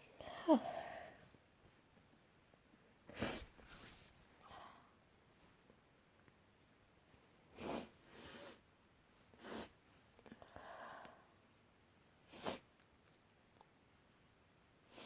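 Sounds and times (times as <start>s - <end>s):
soft breathing: 0.0s - 1.4s, 3.2s - 5.0s
person sneezing: 3.2s - 3.9s.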